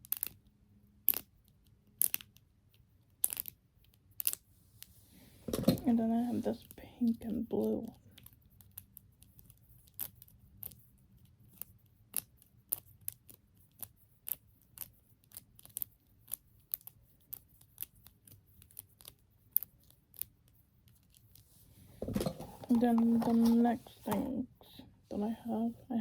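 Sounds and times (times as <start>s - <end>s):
fidget toy clicking: 1.1s - 1.3s, 3.2s - 3.6s.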